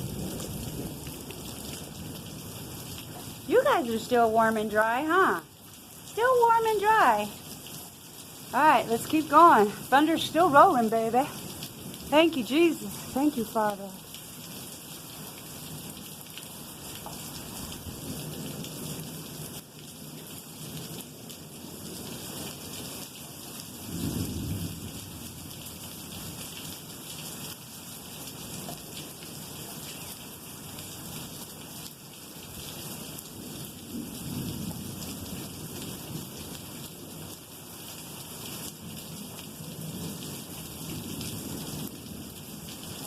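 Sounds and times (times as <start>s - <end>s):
thunder rumbling: 0.0s - 2.2s
steady rain falling: 0.0s - 43.0s.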